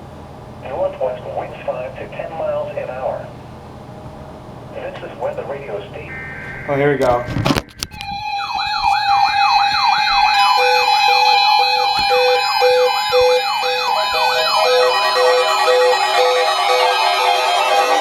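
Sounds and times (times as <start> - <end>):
steady alarm tone: 4.7 - 18.0
on-off beep: 6.0 - 9.6
rising-falling siren sweep: 6.0 - 18.0.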